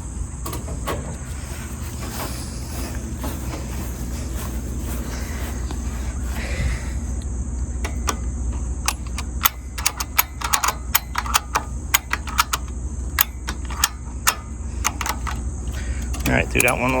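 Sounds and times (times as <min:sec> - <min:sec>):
steady low hum: 0:00.0 - 0:17.0
ratchet strap clicking: 0:07.8 - 0:17.0.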